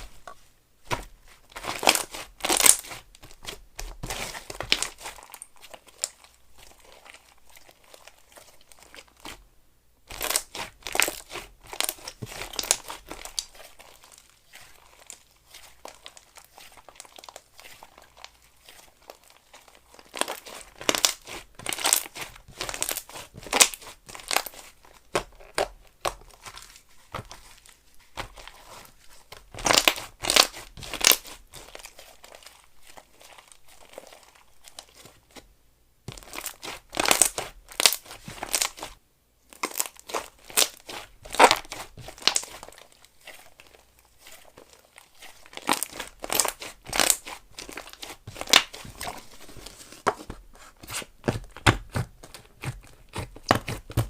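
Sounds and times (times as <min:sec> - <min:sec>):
slime crackling and popping: 0:00.9 - 0:09.4, 0:10.1 - 0:35.4, 0:36.1 - 0:49.4, 0:50.8 - 0:54.0.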